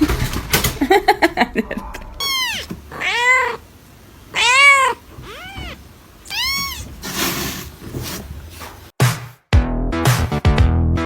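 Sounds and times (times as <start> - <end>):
cat meowing: 1.9 - 3.7, 4.3 - 7.0.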